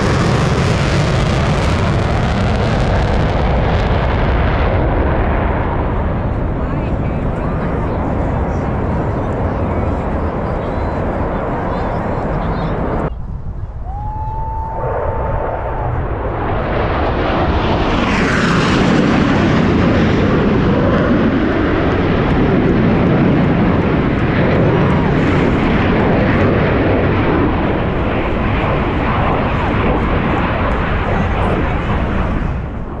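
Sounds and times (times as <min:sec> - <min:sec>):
jet flying by: 0:00.0 - 0:33.0.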